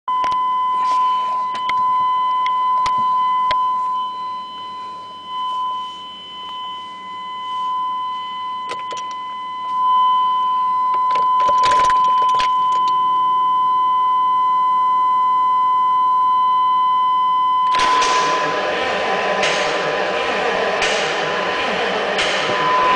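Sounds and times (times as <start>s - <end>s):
high-pitched electronic beep tone: 0.1s - 20.0s, 22.2s - 22.9s.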